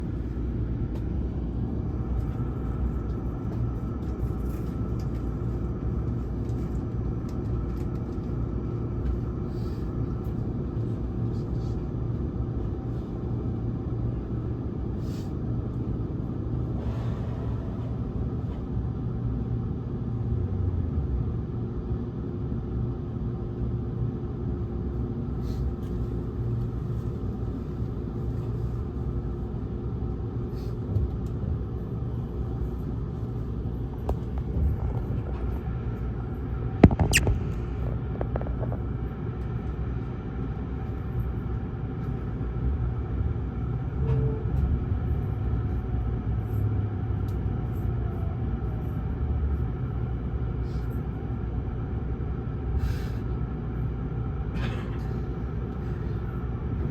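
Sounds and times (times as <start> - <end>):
train car rumble and hum: 0.0 - 56.9
sharp loud click: 36.8 - 37.7.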